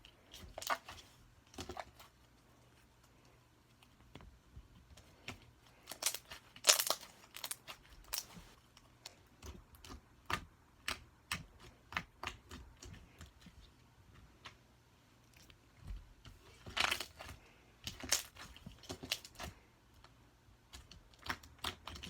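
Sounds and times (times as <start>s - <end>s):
slime squished by hand: 5.8s - 8.5s.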